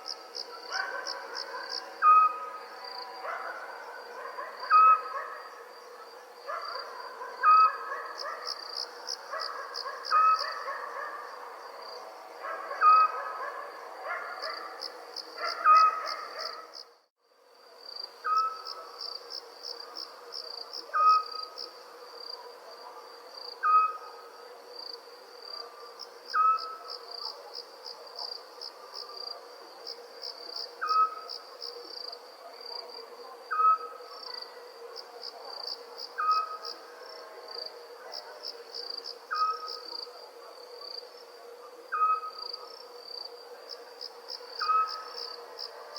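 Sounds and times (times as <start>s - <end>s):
crickets chirping: 0.0s - 45.9s
owl-like call: 1.5s - 2.7s, 4.6s - 5.3s, 12.7s - 13.4s, 15.5s - 16.6s, 20.9s - 21.5s, 23.6s - 24.2s, 26.3s - 26.9s, 30.8s - 31.4s, 33.5s - 34.1s, 36.2s - 36.7s, 39.3s - 39.8s, 41.9s - 42.6s, 44.6s - 45.2s.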